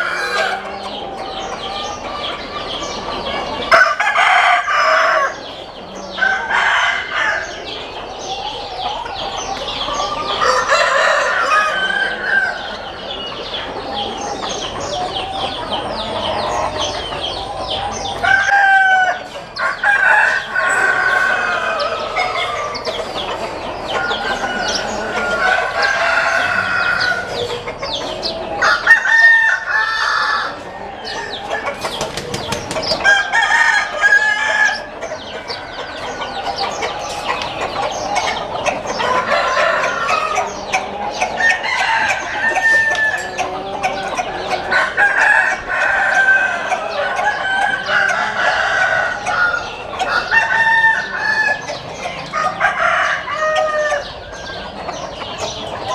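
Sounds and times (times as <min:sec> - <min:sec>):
chickens clucking: 0:00.0 - 0:55.9
roosters crowing: 0:00.0 - 0:55.9.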